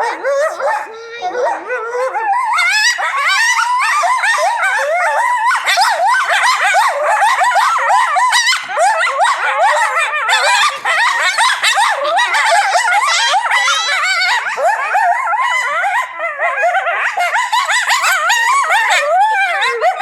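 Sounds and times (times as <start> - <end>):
coyotes howling and yipping: 0.0 - 20.0.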